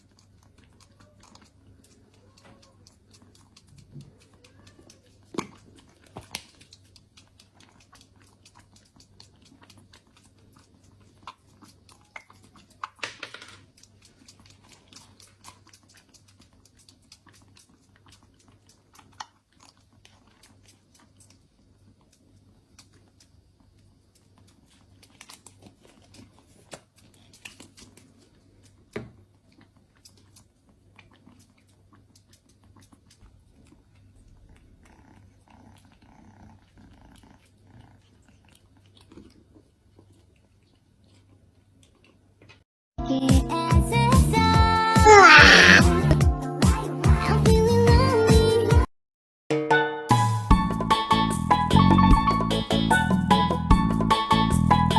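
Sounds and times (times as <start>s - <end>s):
kittens chewing and crunching: 0.0s - 42.6s.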